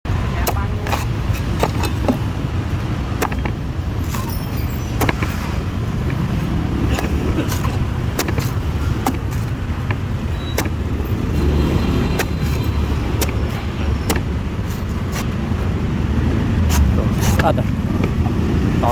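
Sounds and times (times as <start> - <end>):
road traffic rumble: 0.0 - 18.9
knife chopping coconut: 0.3 - 2.4, 3.1 - 4.3, 4.9 - 15.3.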